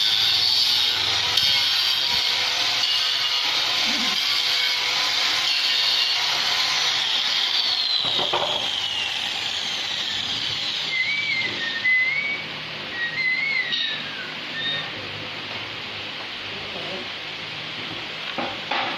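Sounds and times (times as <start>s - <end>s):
power tool whining on wood: 0.0s - 15.0s
short warbling whistles: 10.9s - 15.0s.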